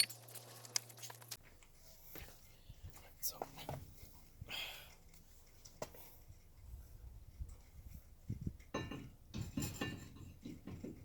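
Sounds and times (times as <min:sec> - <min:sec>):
metal tools clinking: 0:00.0 - 0:01.4.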